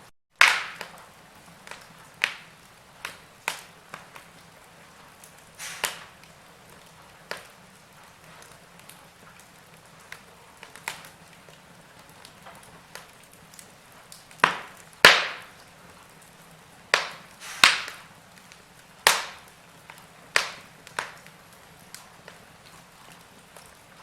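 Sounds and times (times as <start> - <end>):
wood fire crackling: 0.0 - 24.0
loud sharp pops: 0.4 - 1.0, 1.7 - 4.3, 5.6 - 6.2, 14.4 - 15.6, 16.9 - 18.1, 19.0 - 19.5, 20.4 - 21.2
fire hiss: 0.7 - 24.0.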